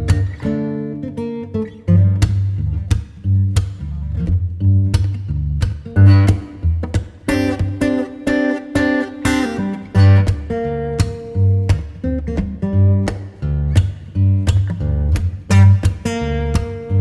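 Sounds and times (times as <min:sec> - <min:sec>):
plucked and strummed guitar: 0:00.0 - 0:17.0
bass line: 0:01.9 - 0:08.0, 0:09.6 - 0:17.0.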